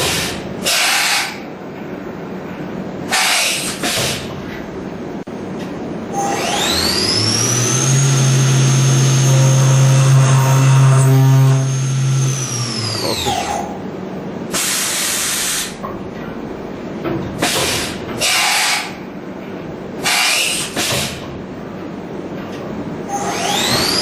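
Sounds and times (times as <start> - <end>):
machine hum: 4.7 - 14.5
milling machine spindle whine: 6.1 - 13.7.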